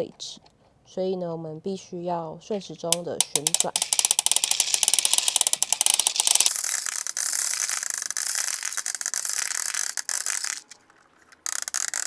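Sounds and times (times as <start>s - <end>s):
toy cement mixer gears clicking: 2.9s - 12.0s.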